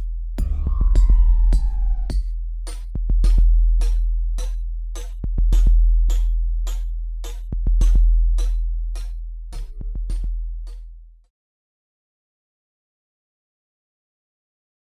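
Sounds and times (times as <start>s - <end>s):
drum machine beat: 0.0s - 10.8s
deep bass note: 0.4s - 2.4s, 9.6s - 10.4s.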